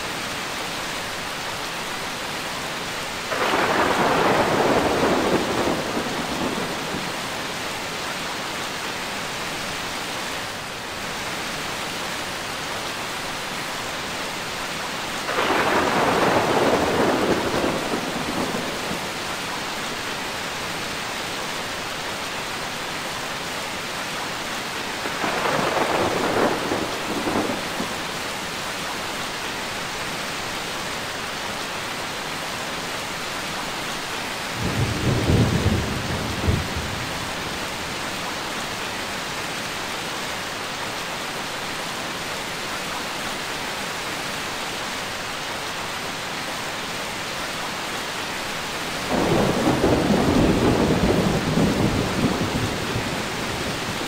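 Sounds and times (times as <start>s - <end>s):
heavy rain: 0.0s - 54.0s
thunder rolling: 3.3s - 7.2s, 15.3s - 19.1s, 49.1s - 54.0s.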